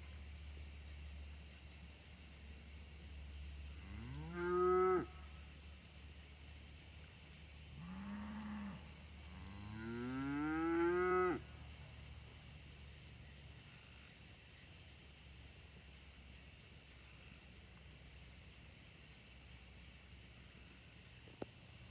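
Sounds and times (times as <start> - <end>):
insects chirring: 0.0 - 21.9
cow mooing: 4.0 - 5.1.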